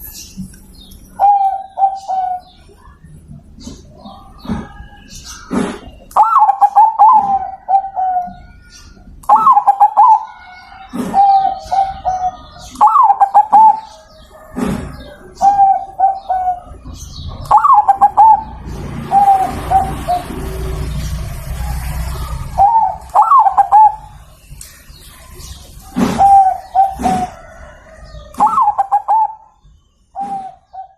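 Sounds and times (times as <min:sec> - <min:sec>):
dove cooing: 0:01.2 - 0:02.6, 0:05.5 - 0:08.5, 0:09.3 - 0:20.8, 0:21.5 - 0:24.2, 0:25.8 - 0:29.6, 0:30.2 - 0:30.9.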